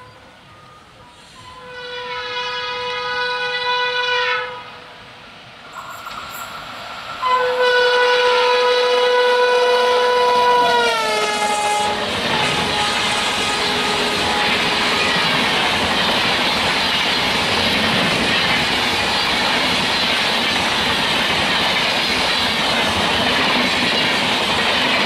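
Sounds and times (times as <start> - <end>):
train coaches rushing past: 0.0 - 2.9, 4.7 - 25.0
train horn: 1.2 - 4.9, 7.2 - 15.4.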